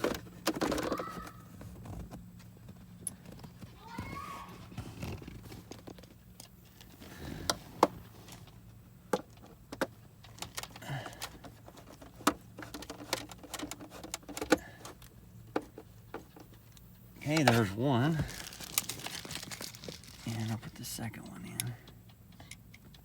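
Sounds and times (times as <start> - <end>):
steady low hum: 0.0 - 23.0
clicks of plastic parts handled: 7.5 - 20.5.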